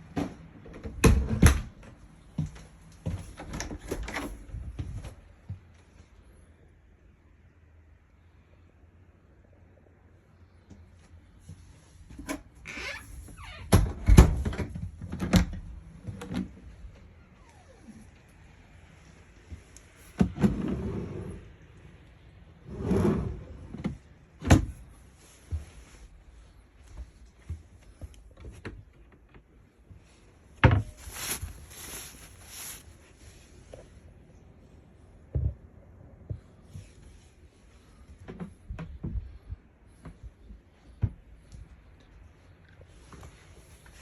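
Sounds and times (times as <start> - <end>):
door sliding: 20.2 - 21.6, 22.6 - 24.8.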